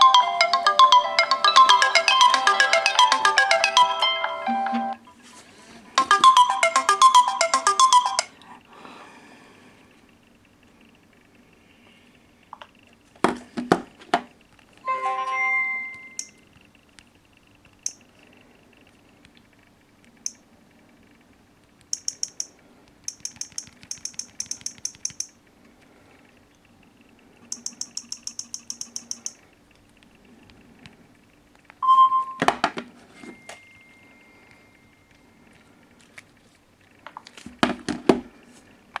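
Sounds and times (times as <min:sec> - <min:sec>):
smartphone chime: 0:00.0 - 0:05.2, 0:06.0 - 0:08.4, 0:14.9 - 0:16.4, 0:27.5 - 0:29.4, 0:31.8 - 0:32.6, 0:33.2 - 0:35.4
rapid high-pitched beeps: 0:06.0 - 0:08.3, 0:22.0 - 0:22.5, 0:23.1 - 0:25.3, 0:27.5 - 0:29.4.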